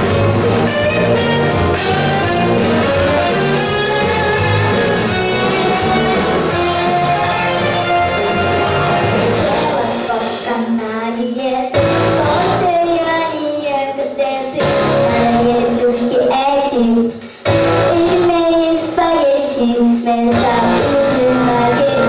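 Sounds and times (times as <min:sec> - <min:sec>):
backing track music: 0:00.0 - 0:13.3, 0:14.0 - 0:22.0
girl singing: 0:09.4 - 0:22.0.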